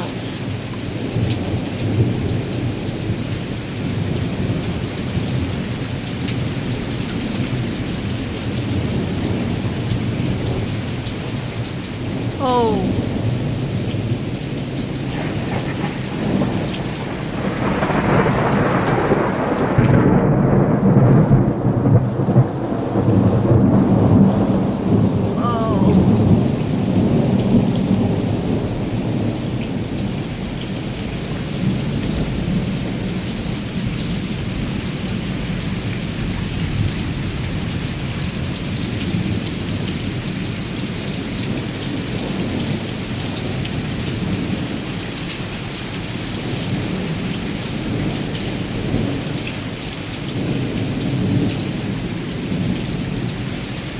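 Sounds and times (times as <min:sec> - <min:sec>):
steady rain: 0:00.0 - 0:53.9
thunder rolling: 0:15.0 - 0:25.4.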